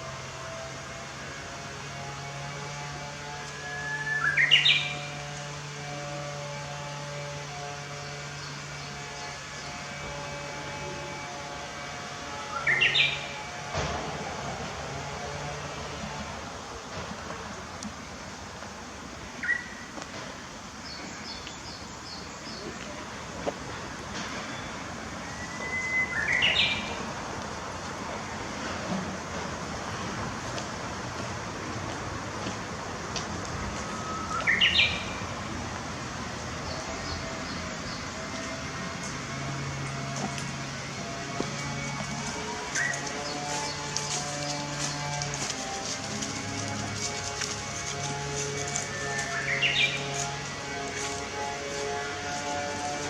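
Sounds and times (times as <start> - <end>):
low background noise: 0.0 - 53.0
steady low hum: 0.0 - 53.0
bird singing whistled song: 3.8 - 4.9, 24.6 - 26.9, 33.9 - 35.1.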